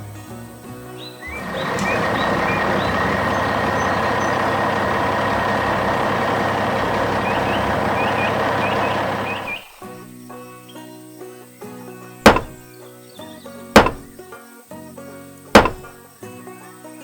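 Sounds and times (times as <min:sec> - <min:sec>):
heavy vehicle engine running: 0:01.2 - 0:09.8, 0:12.3 - 0:12.6, 0:13.8 - 0:14.1, 0:15.6 - 0:15.9.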